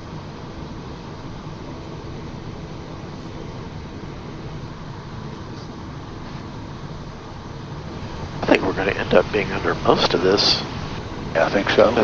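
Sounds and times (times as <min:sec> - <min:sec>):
jet cockpit airflow and engine drone: 0:01.5 - 0:04.8, 0:06.2 - 0:12.0.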